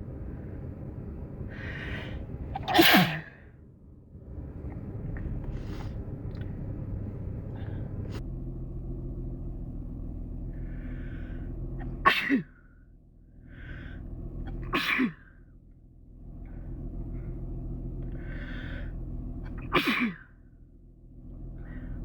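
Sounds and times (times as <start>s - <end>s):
steady low hum: 0.0s - 22.0s
person sneezing: 2.6s - 3.4s, 12.0s - 12.5s, 19.7s - 20.2s.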